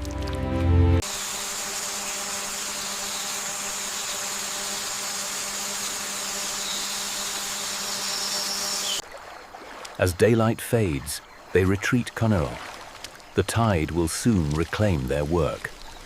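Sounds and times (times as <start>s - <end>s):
thin high whine: 1.0s - 9.0s.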